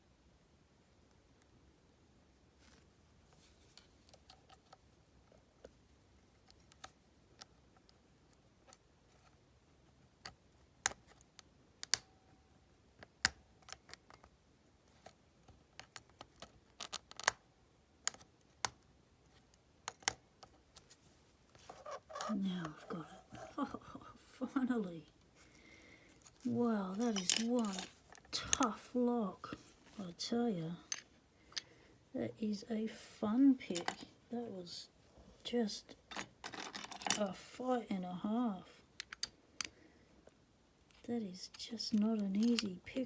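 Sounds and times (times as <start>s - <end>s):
lock picking metallic clicks: 39.0s - 39.7s, 42.4s - 42.7s.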